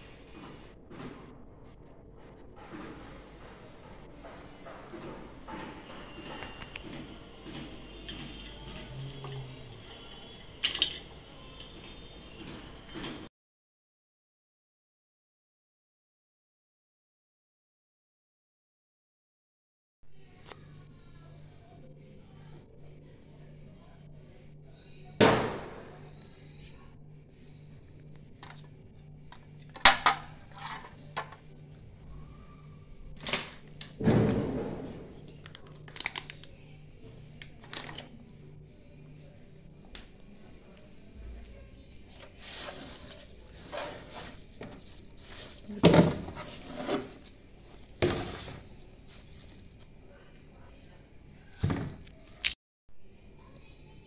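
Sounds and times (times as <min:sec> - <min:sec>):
dishes and utensils clinking: 0:08.0 - 0:11.9
faint low hum: 0:20.1 - 0:34.0, 0:34.8 - 0:52.4.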